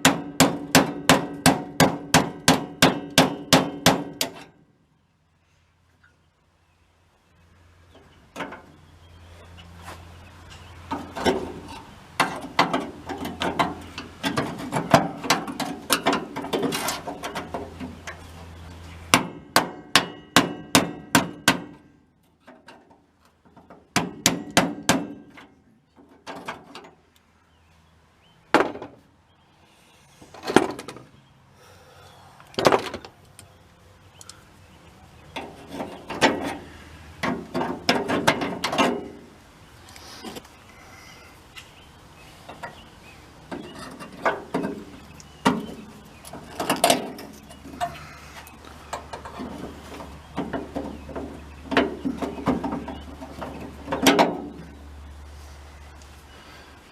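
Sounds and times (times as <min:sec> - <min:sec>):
hammer knocking on metal hinge: 0:00.0 - 0:04.4, 0:19.1 - 0:21.8, 0:23.9 - 0:25.3.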